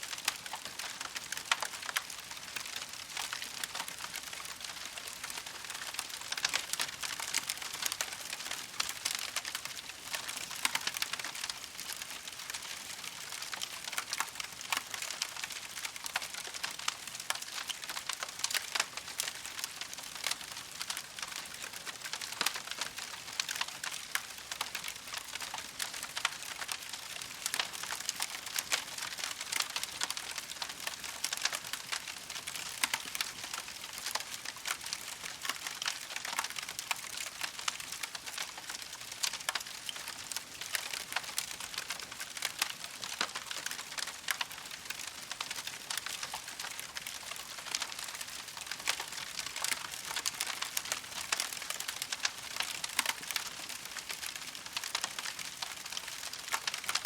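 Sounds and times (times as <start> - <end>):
campfire crackling: 0.1 - 57.0.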